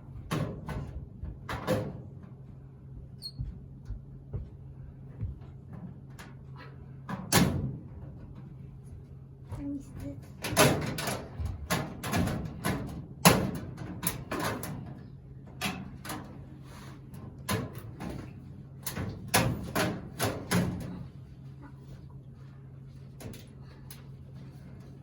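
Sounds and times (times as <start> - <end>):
steady low hum: 0.0 - 25.0
irregular knocks and clatter: 0.2 - 16.3.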